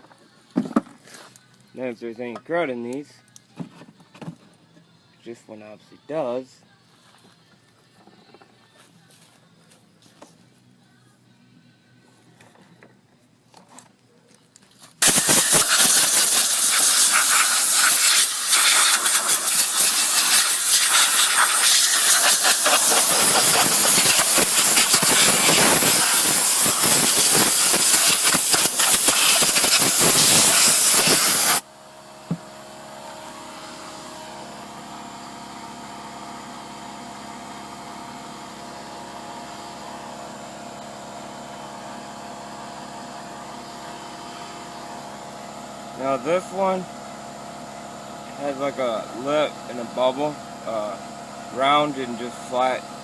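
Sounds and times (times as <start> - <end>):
compressed air spray hissing: 15.0 - 31.6.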